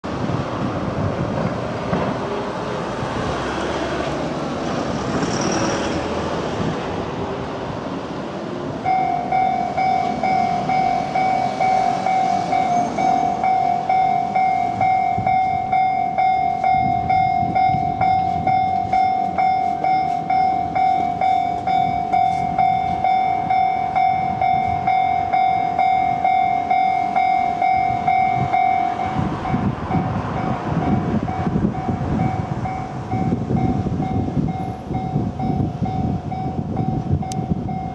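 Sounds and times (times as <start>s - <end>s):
train rumbling: 0.0s - 37.9s
level crossing alarm dinging: 8.8s - 37.9s.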